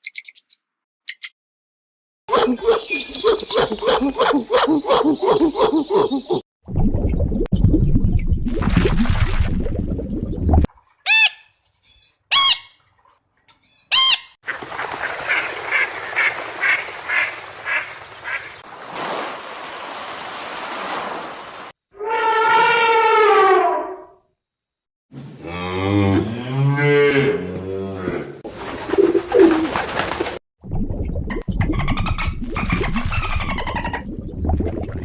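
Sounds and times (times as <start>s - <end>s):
quick evenly spaced animal calls: 10.9s - 12.8s, 13.6s - 18.6s, 28.5s - 30.4s.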